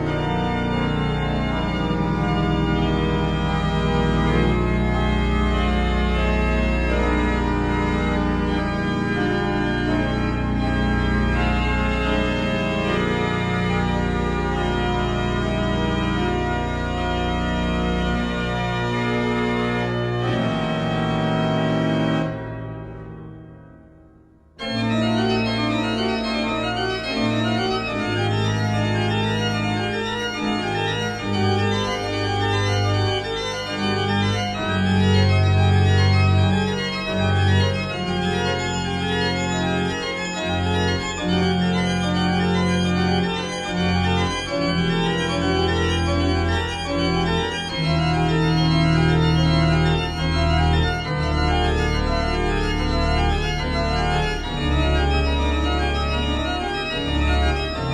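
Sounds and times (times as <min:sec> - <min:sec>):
organ chords over bass line: 0:00.0 - 0:57.9.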